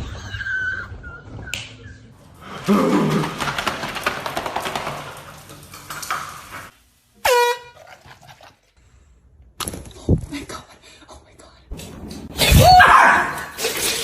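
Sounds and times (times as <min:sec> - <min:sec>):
short horn honk: 0:07.2 - 0:07.8.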